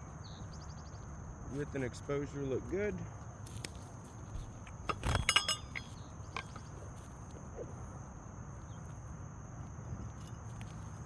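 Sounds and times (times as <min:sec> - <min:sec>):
metallic clinks of nails: 0:05.0 - 0:06.5.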